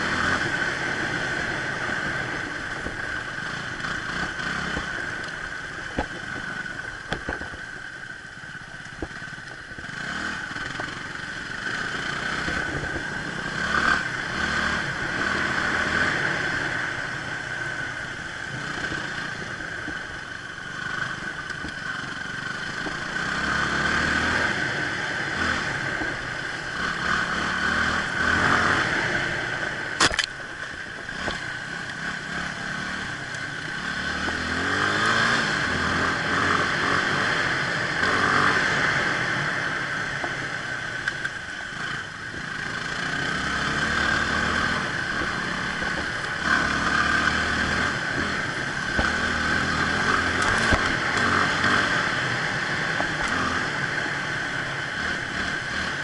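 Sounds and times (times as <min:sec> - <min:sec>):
motorcycle engine: 0:00.0 - 0:56.0
sharp click: 0:30.0 - 0:30.4.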